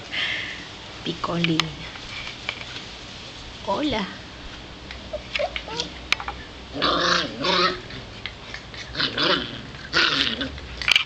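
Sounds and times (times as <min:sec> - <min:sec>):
puppies growling: 0:06.7 - 0:11.0.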